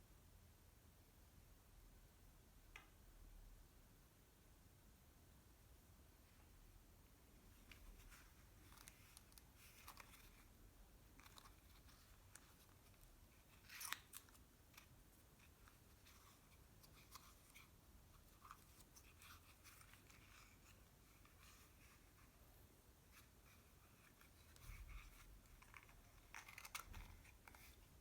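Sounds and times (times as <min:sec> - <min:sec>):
soft clicks of packaging: 0:07.6 - 0:10.5, 0:11.1 - 0:22.1, 0:23.1 - 0:28.0.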